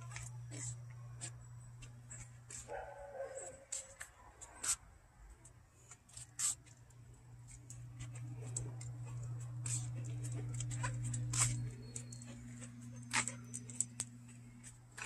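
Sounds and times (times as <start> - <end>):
low motor hum: 0.0 - 2.9, 6.8 - 15.0.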